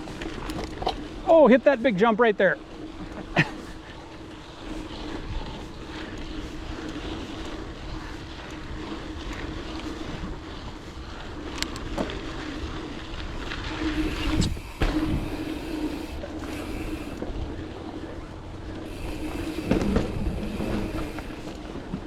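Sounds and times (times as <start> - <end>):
bike rattling: 0.0 - 22.0
mountain bike tyres rolling: 0.0 - 22.0
bike knocks and jolts: 13.8 - 16.0, 18.9 - 22.0.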